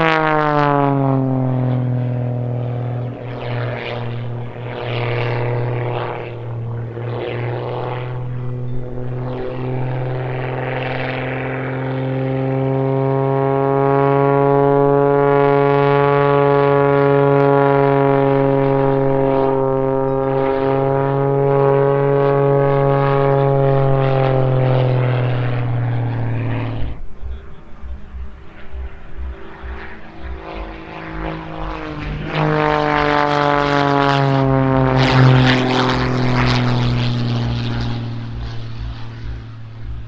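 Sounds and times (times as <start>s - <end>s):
propeller plane engine droning: 0.0s - 40.0s
gusty rumble: 18.2s - 40.0s.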